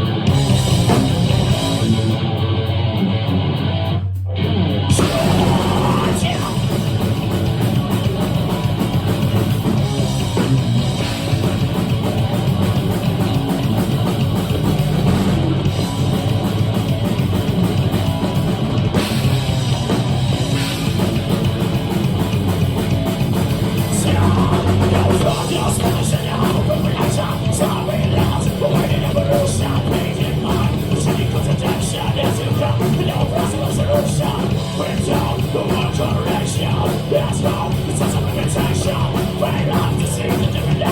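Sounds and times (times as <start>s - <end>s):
bass guitar: 0.0s - 40.9s
distorted electric guitars: 0.0s - 40.9s
drum kit: 0.0s - 40.9s.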